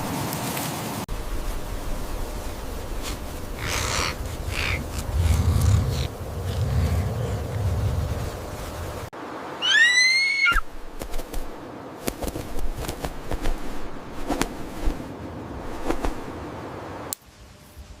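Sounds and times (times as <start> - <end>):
animal high call: 9.6 - 10.6.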